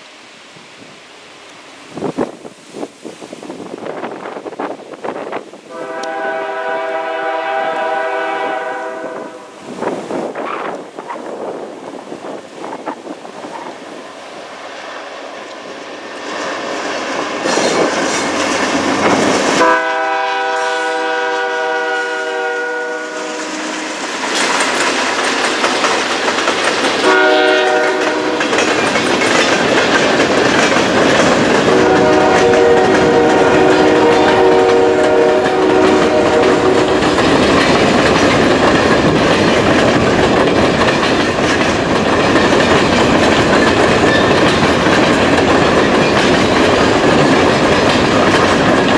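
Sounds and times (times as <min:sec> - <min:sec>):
freight train rumbling: 0:00.0 - 0:48.9
wind: 0:00.0 - 0:48.9
wheels clacking on rail joints: 0:03.8 - 0:20.8, 0:23.1 - 0:48.9
train horn blasts: 0:05.7 - 0:09.6, 0:19.6 - 0:24.0, 0:27.0 - 0:28.6, 0:31.6 - 0:37.1.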